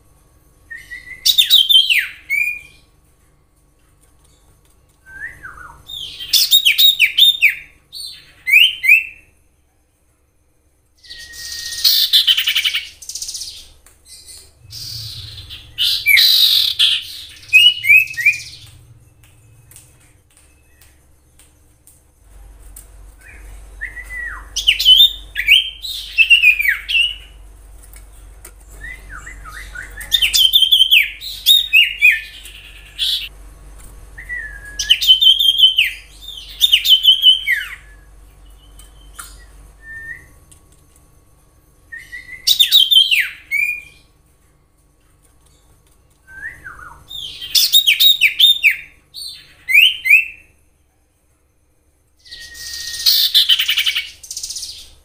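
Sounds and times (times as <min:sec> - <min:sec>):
faint low hum: 0:00.0 - 0:55.0
bird singing whistled notes: 0:00.7 - 0:02.9, 0:05.0 - 0:09.4, 0:11.0 - 0:19.7, 0:23.2 - 0:27.4, 0:28.8 - 0:33.3, 0:34.2 - 0:40.4, 0:41.9 - 0:44.1, 0:46.2 - 0:50.6, 0:52.2 - 0:55.0.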